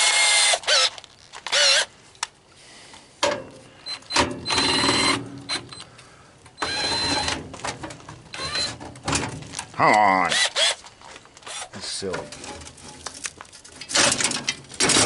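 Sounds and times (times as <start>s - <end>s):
power drill whirring: 0.0s - 1.9s, 3.8s - 5.8s, 6.6s - 7.4s, 8.3s - 8.8s, 10.3s - 10.8s, 11.4s - 11.7s.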